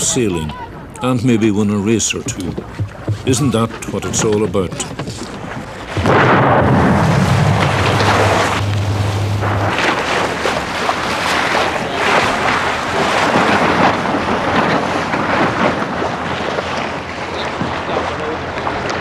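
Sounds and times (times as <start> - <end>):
waves splashing: 0.0 - 19.0
wind buffeting microphone: 2.2 - 19.0
low steady hum: 5.0 - 14.6.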